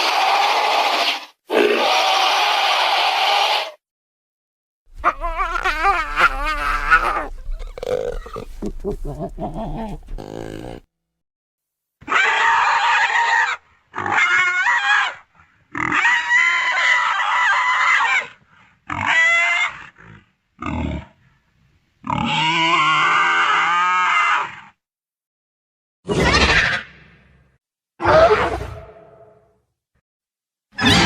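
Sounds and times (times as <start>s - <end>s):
dinosaur animal-like calls: 4.9s - 10.9s.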